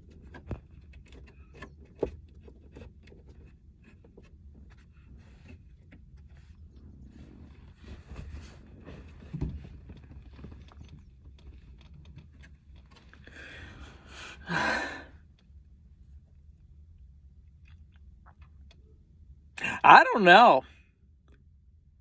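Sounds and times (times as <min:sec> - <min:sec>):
loud sigh: 0:14.1 - 0:15.1, 0:19.6 - 0:20.6.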